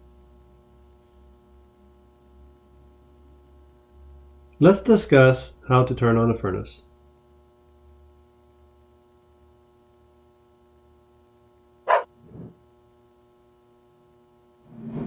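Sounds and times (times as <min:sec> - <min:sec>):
low electrical hum: 0:00.0 - 0:15.0
dog barking: 0:11.9 - 0:12.1.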